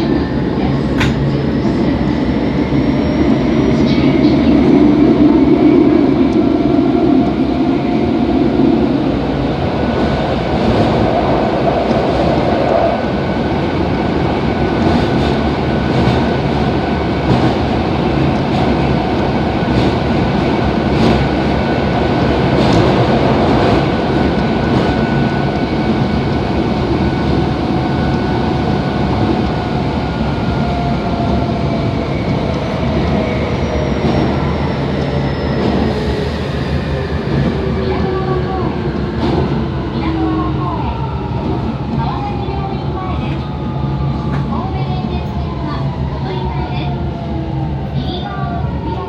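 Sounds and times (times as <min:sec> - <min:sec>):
train wheels rumbling on rail: 0:00.0 - 0:49.0
rail joint clicks: 0:00.6 - 0:02.3, 0:10.5 - 0:13.0, 0:13.9 - 0:28.3.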